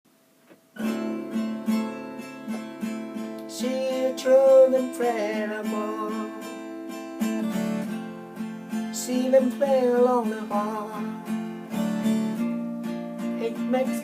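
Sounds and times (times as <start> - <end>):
acoustic guitar strumming: 0.4 - 14.0
person singing: 3.4 - 6.7, 8.8 - 11.3, 13.2 - 14.0.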